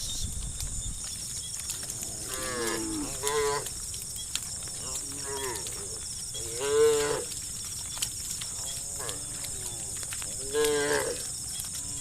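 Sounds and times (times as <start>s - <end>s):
cattle mooing: 10.4s - 11.2s.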